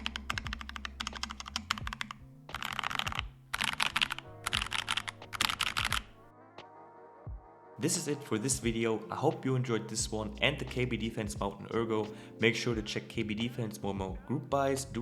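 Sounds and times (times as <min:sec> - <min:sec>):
mechanical keyboard typing: 0:00.0 - 0:06.2
background music: 0:00.0 - 0:15.0.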